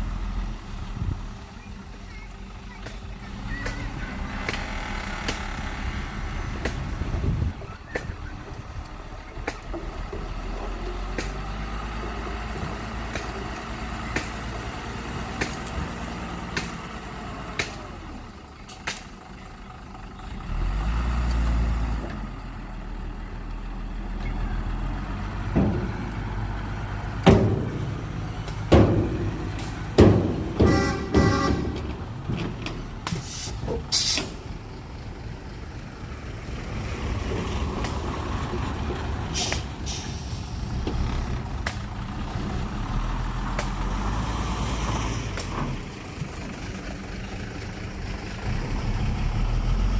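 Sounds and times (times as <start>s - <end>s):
heavy diesel engines droning: 0.0s - 49.9s
loud knocks and clanks: 27.2s - 32.8s.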